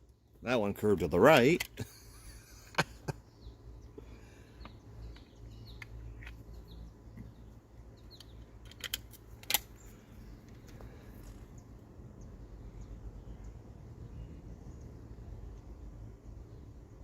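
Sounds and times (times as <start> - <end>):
small birds chirping: 0.0 - 17.0
light mechanical clicks: 4.6 - 7.4, 8.0 - 11.6.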